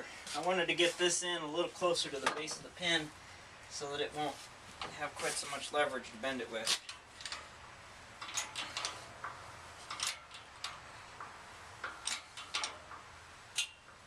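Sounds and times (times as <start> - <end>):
sharp metallic clicks: 6.7 - 14.0.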